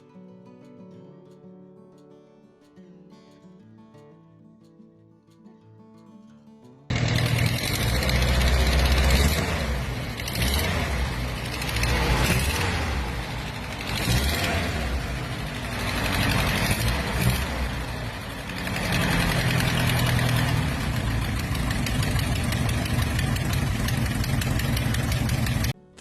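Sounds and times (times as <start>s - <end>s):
vehicle engine running: 6.9s - 25.8s.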